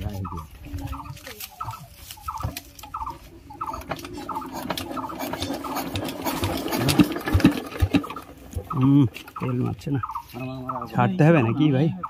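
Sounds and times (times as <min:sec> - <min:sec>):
diesel engine cranking: 0:02.8 - 0:09.8.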